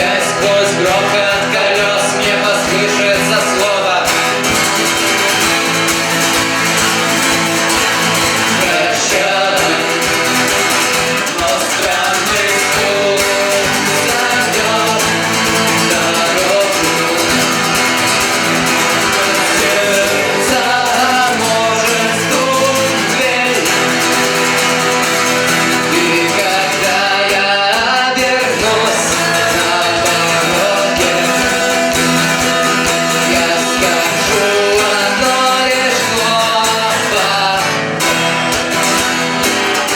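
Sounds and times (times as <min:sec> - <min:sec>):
person singing: 0:00.0 - 0:38.7
acoustic guitar playing: 0:00.0 - 0:39.9.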